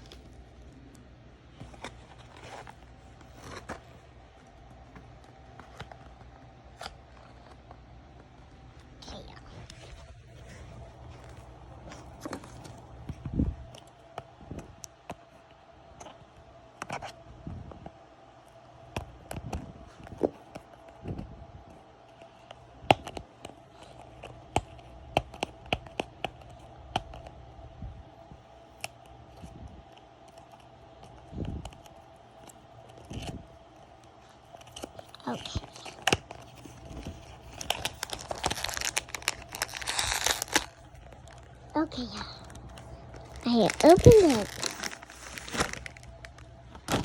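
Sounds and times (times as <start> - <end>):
package opening clicks and rustles: 0.0 - 7.8, 11.0 - 12.9, 28.7 - 47.0.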